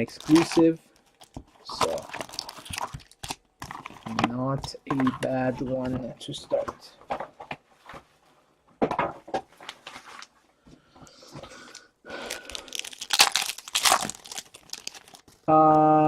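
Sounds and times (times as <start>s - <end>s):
wrapper tearing and crinkling: 0.0s - 4.1s, 12.1s - 15.4s.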